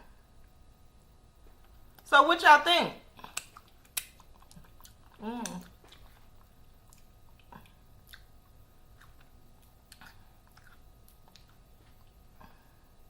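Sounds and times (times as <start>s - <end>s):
faint chewing crunches: 3.2s - 12.9s.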